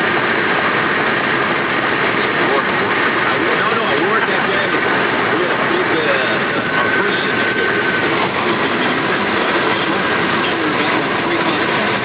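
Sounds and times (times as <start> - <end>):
car road and engine noise: 0.0 - 12.0.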